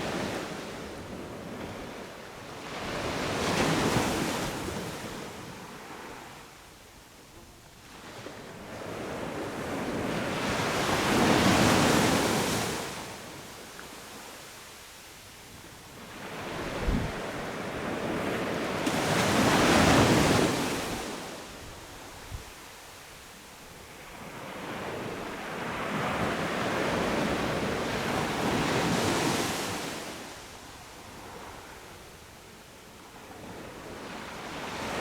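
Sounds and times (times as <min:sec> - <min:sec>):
waves breaking on a beach: 0:00.0 - 0:35.0.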